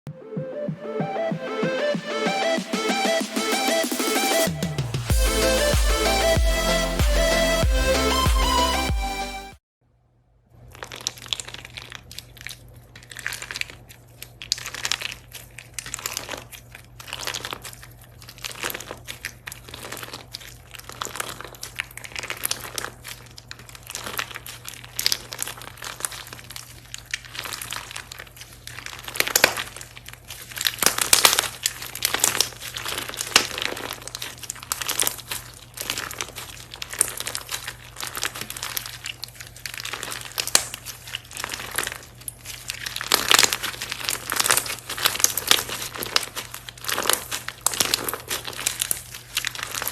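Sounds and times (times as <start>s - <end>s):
slime squished by hand: 10.5s - 49.9s.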